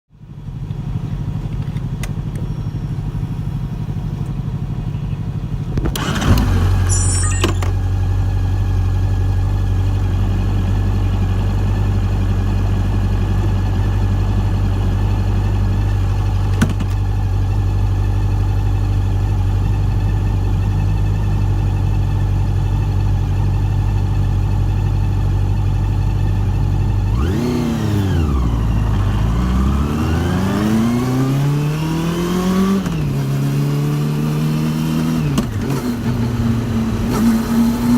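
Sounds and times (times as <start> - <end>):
motorcycle engine idling: 0.2 - 27.2
motorcycle engine revving: 5.3 - 16.9, 26.6 - 37.9.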